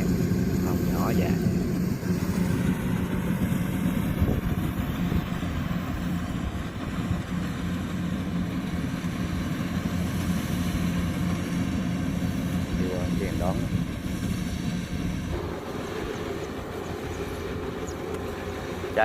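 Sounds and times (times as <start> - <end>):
combine harvester droning: 0.0 - 19.0.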